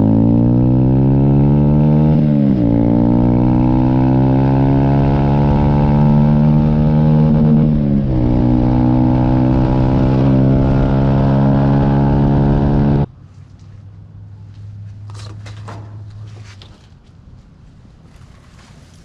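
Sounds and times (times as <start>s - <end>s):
engine running: 0.0s - 13.1s.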